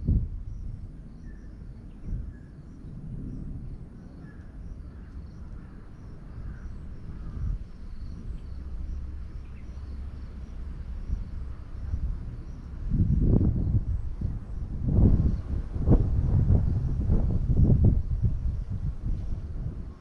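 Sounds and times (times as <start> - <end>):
wind rumble: 0.0 - 20.0.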